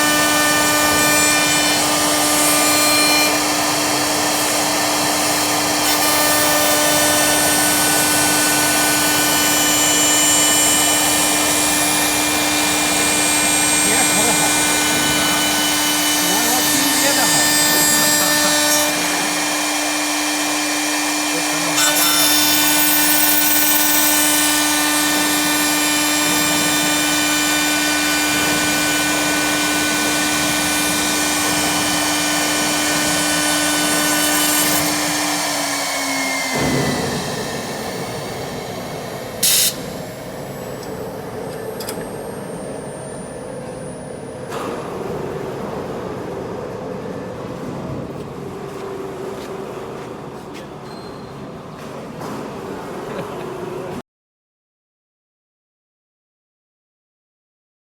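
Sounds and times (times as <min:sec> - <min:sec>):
wood cutting: 0:00.0 - 0:44.3
wood lathe motor whine: 0:00.0 - 0:46.4.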